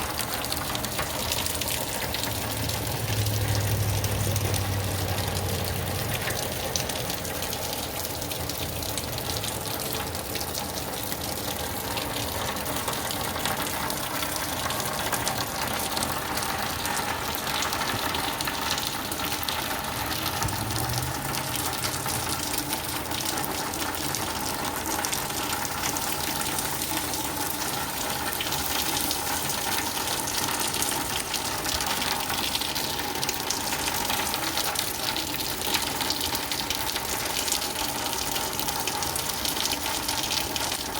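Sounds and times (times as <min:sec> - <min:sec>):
heavy rain pouring: 0:00.0 - 0:40.9
water gushing: 0:00.0 - 0:40.9.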